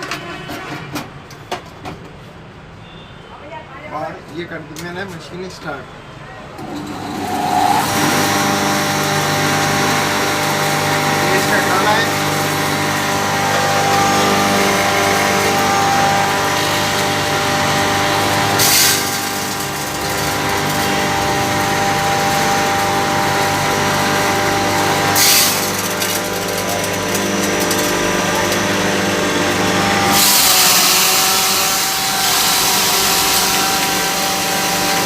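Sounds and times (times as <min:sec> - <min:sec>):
grinding mill running: 0:06.6 - 0:35.0.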